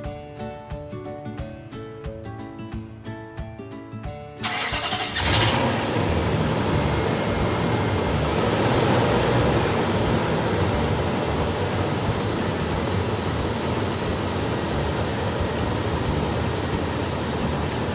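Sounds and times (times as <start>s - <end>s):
background music: 0.0s - 17.9s
truck engine cranking and running: 4.4s - 17.9s.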